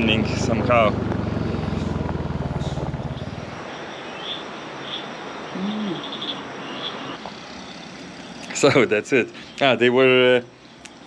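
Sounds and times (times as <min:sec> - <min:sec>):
vehicle engine running: 0:00.0 - 0:03.8.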